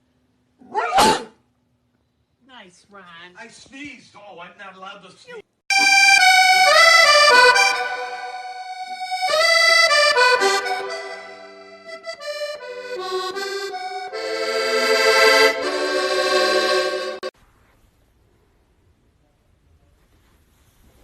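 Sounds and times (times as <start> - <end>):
instrumental music with reed melody: 5.7 - 17.3.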